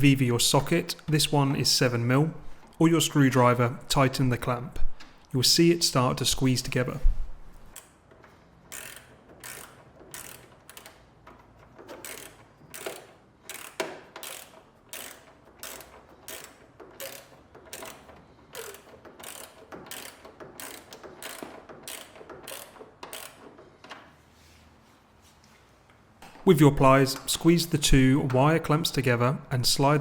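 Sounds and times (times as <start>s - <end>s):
ratchet clicking: 7.7s - 23.6s.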